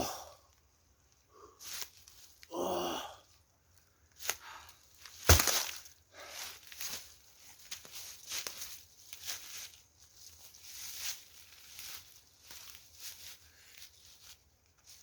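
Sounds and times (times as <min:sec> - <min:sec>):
man sighing: 0:02.5 - 0:03.2.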